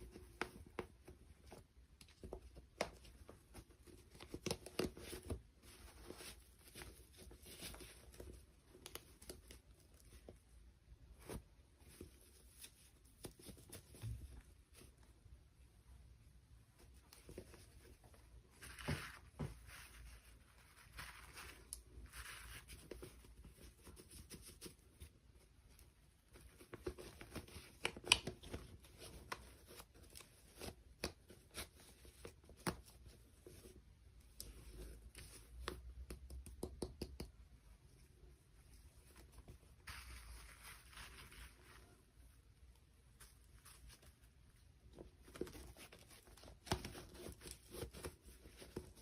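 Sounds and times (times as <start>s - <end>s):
sharp clicks and taps: 35.6s - 37.4s.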